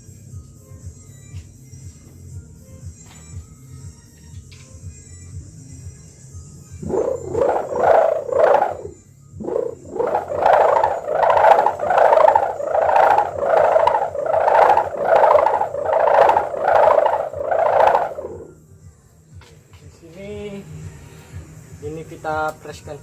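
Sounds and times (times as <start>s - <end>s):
kite hummer buzzing: 6.8s - 18.6s.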